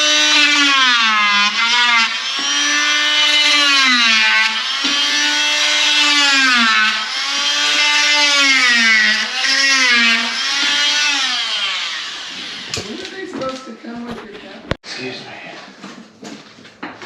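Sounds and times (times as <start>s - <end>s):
rotary cutting tool whining: 0.0s - 13.2s.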